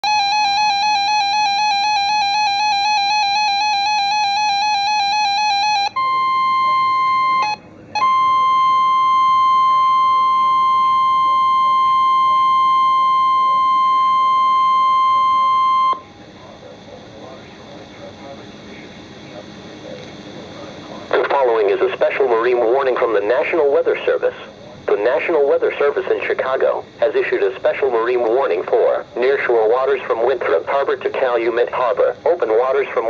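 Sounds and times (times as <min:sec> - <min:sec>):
warbling electronic alarm beeps: 0:00.0 - 0:16.1
steady warning alarm tone: 0:00.0 - 0:33.0.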